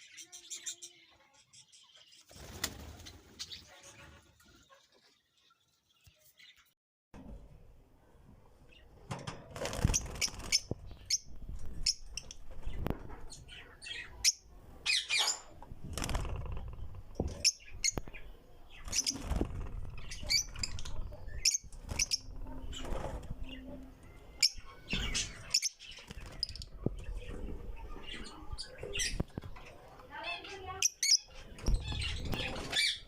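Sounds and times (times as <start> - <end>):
lovebirds chirping: 0.0 - 6.7, 9.7 - 33.0
birds clicking and rustling: 9.0 - 13.4, 15.2 - 33.0.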